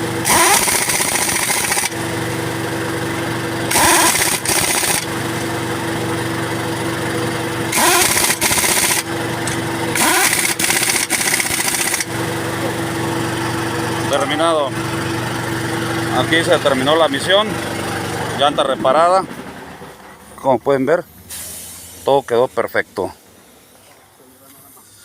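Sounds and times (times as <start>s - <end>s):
pneumatic impact wrench bursts: 0.0s - 2.1s, 3.6s - 5.2s, 7.7s - 12.3s, 21.3s - 22.1s
steady engine-like hum: 0.0s - 25.0s.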